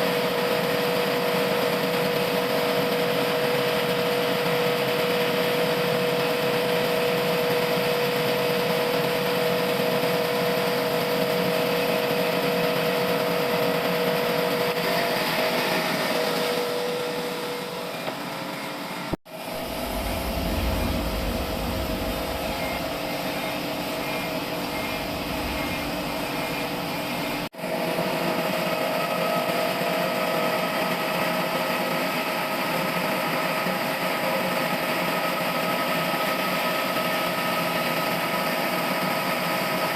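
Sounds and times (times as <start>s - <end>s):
sawmill machine humming: 19.4s - 27.5s.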